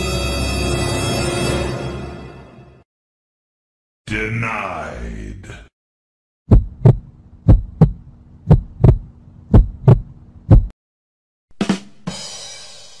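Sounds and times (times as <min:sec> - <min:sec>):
heartbeat thumps: 0:06.5 - 0:10.8.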